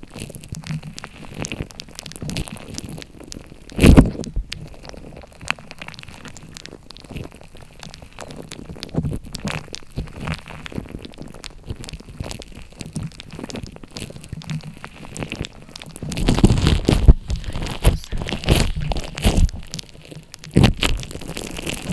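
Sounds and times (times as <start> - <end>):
slime squished by hand: 15.0 - 19.8.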